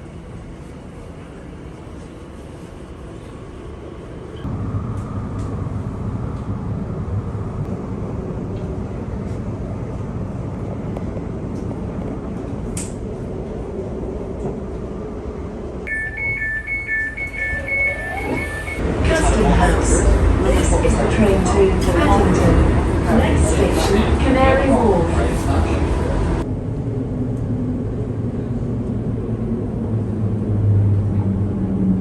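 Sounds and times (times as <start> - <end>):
train wheels rumbling on rail: 0.0 - 15.8, 17.2 - 32.0
two-tone electronic sound: 15.9 - 18.8.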